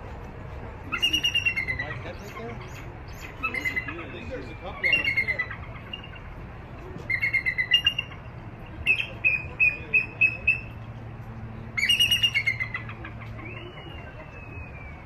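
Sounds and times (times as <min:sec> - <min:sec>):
eagle chattering call: 0:00.9 - 0:04.2, 0:04.8 - 0:06.3, 0:07.1 - 0:08.2, 0:11.8 - 0:14.3.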